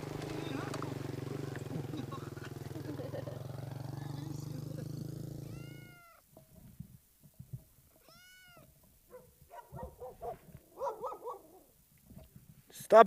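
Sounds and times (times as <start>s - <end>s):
cat meowing: 5.4s - 6.2s, 8.0s - 8.7s.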